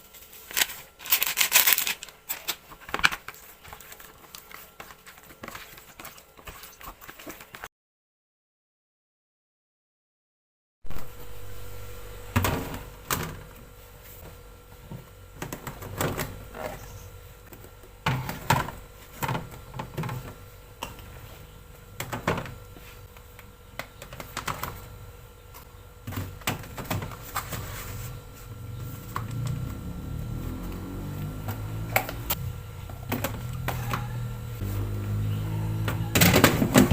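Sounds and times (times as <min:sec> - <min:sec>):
steady hum: 0:10.9 - 0:36.9.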